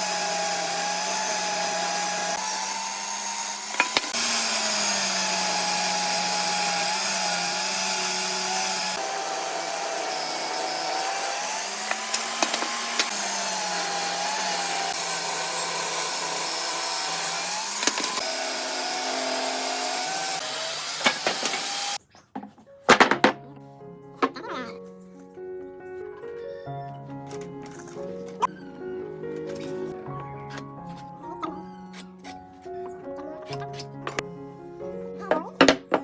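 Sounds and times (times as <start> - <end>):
power tool working wood: 0.0 - 22.0.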